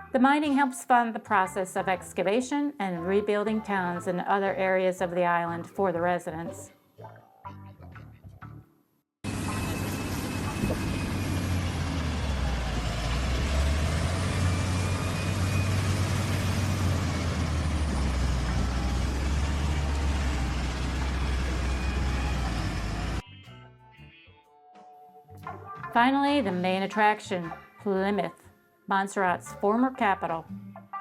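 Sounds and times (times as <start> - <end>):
vehicle engine and road rumble: 9.3 - 23.2.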